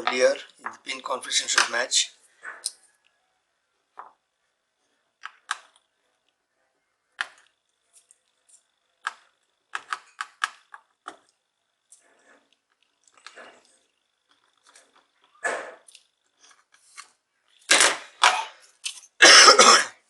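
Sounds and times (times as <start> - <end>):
small tools tapping circuit board: 5.2 - 5.9, 7.2 - 12.0.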